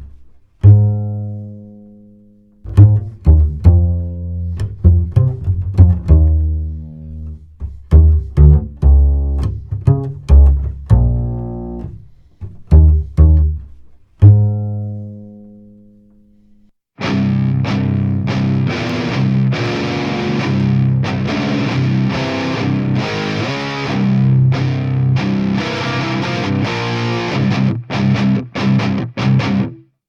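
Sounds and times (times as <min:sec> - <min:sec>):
plucked upright bass: 0:00.0 - 0:16.6, 0:20.6 - 0:28.4
distorted electric guitars: 0:17.0 - 0:29.8.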